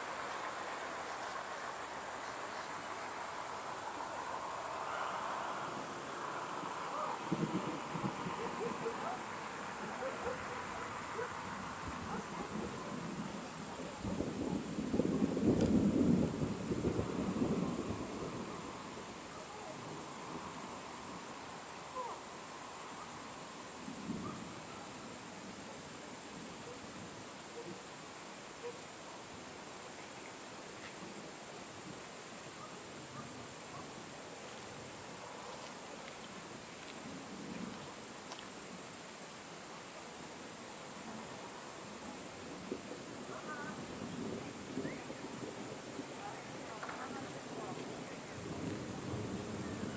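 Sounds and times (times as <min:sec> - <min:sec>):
crickets chirring: 0:00.0 - 0:49.9
thunder rumble: 0:05.4 - 0:10.4, 0:11.6 - 0:19.2, 0:42.6 - 0:49.9.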